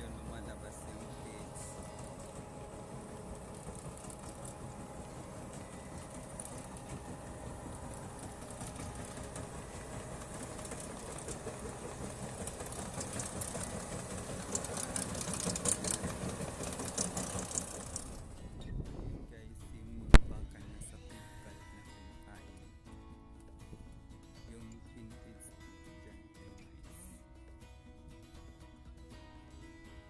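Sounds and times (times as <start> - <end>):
clicking and rattling: 0.0 - 18.7
vehicle engine running: 0.0 - 21.6.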